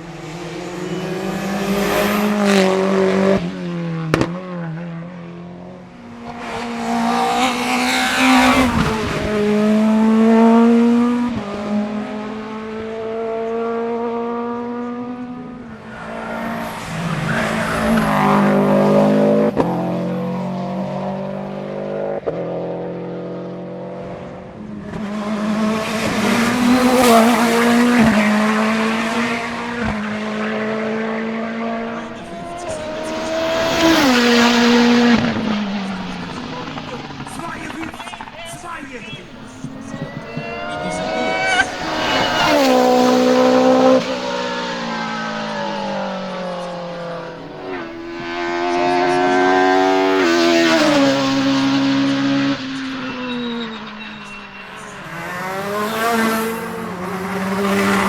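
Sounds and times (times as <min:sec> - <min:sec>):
racing car engines revving: 0:00.0 - 0:58.0
tyres squealing on tarmac: 0:31.8 - 0:56.8.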